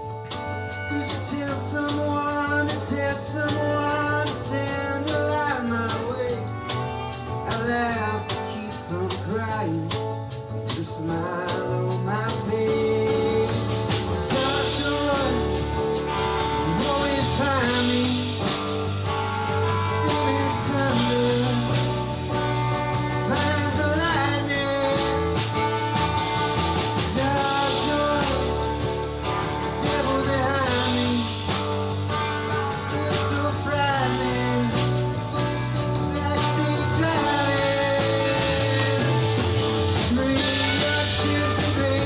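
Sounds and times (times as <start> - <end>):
band playing guitar and bass: 0.0 - 42.0
person singing: 10.7 - 42.0.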